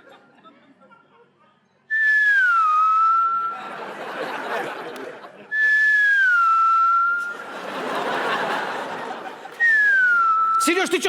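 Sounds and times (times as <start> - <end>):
falling high whistle: 1.9 - 3.7, 5.5 - 7.4, 9.6 - 10.7
audience laughter: 3.5 - 5.7, 7.2 - 9.9.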